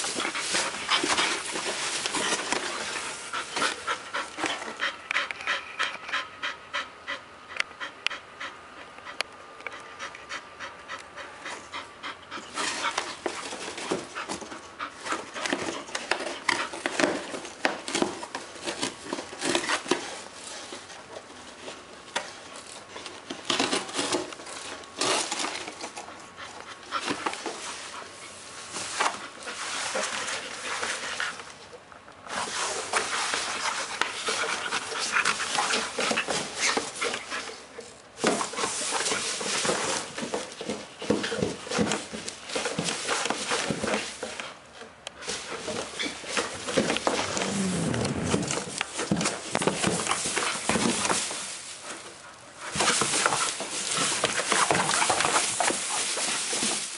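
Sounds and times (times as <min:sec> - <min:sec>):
cardboard crinkling and knocking: 0:00.0 - 0:03.9, 0:12.6 - 0:26.0, 0:38.2 - 0:44.5, 0:45.2 - 0:56.9.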